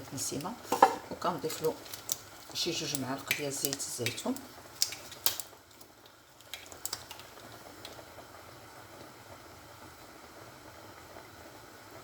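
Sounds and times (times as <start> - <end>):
oil trickling: 0.0 - 9.5.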